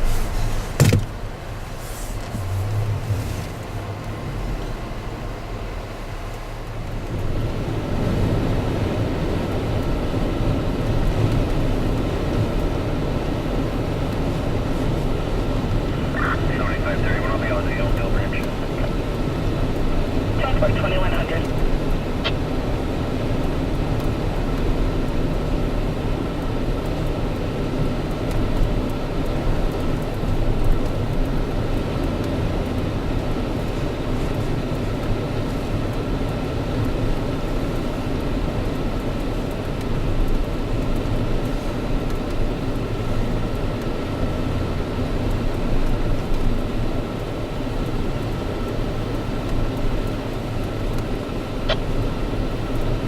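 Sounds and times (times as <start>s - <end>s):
car engine and tyres rumbling: 0.0s - 53.0s
faint steady whine: 12.6s - 53.0s.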